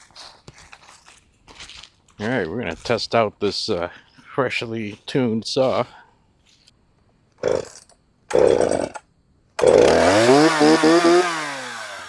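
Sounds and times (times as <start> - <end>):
chainsaw engine revving: 7.4 - 9.0, 9.6 - 12.0
chainsaw pull-start: 7.4 - 9.0, 9.6 - 12.0.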